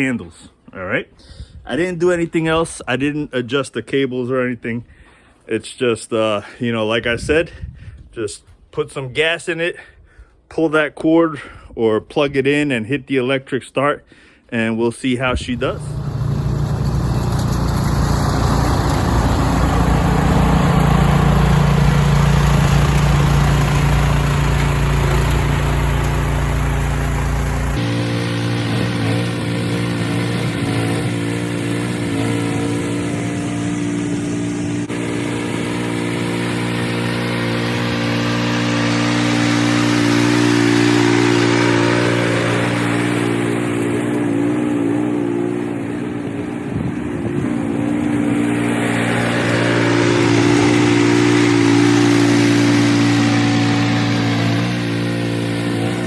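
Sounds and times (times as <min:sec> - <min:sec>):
snowblower engine running: 0:15.5 - 0:56.0.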